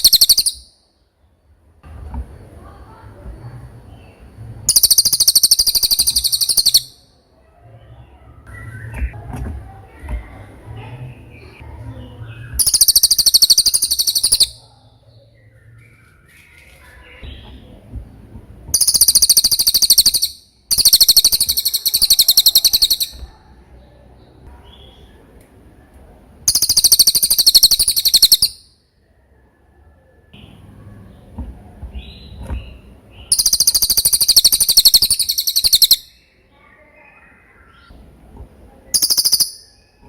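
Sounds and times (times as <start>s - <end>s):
songbird high fast trilling: 12.6s - 14.6s, 33.3s - 36.0s, 39.0s - 39.7s.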